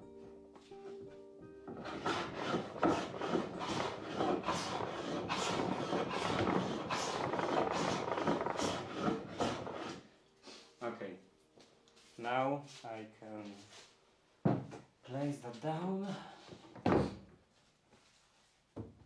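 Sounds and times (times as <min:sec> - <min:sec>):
hand sanding wood: 0:01.7 - 0:10.0.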